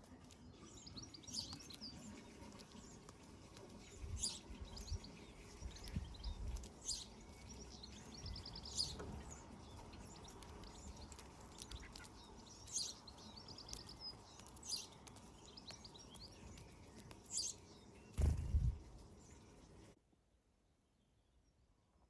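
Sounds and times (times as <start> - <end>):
small birds chirping: 0.0 - 20.0
low thud: 18.2 - 18.8.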